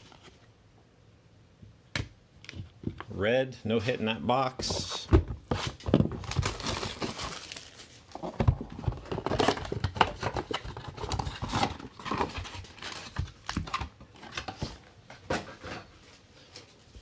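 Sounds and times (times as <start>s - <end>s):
wrappers crinkling and rustling: 6.2s - 8.3s.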